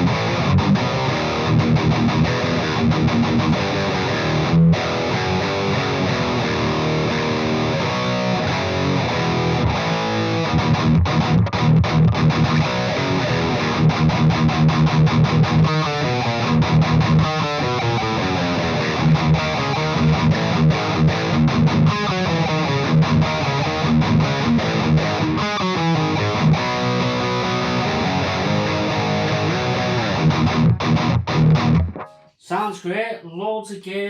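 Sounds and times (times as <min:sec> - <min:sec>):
distorted electric guitar riffing: 0:00.0 - 0:32.6.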